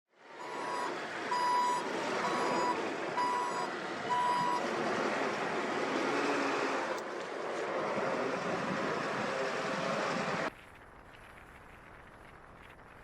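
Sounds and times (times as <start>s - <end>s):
reversing alarm beeps: 0.4s - 4.6s.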